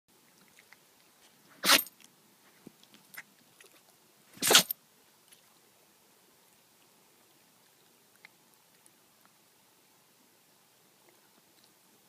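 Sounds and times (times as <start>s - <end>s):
dog sneezing: 1.6s - 1.9s, 4.4s - 4.7s.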